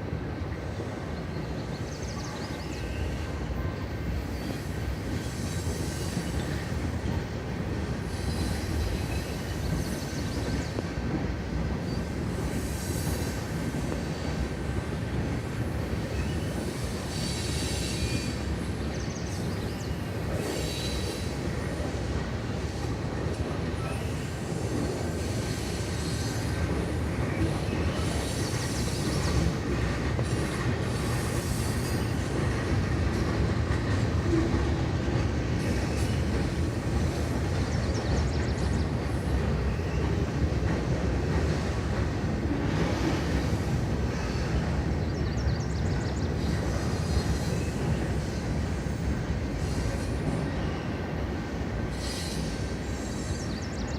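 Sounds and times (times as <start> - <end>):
freight train cars rumbling: 0.0 - 53.9
train wheels squealing: 0.1 - 53.9.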